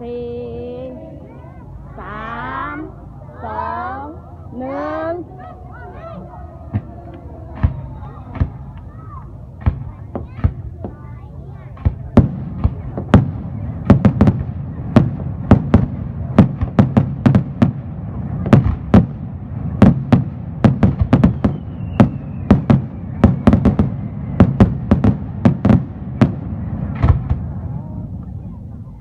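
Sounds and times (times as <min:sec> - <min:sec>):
low rumble of explosions: 0:06.6 - 0:29.0
fireworks loud bangs: 0:06.7 - 0:08.8, 0:09.5 - 0:28.5.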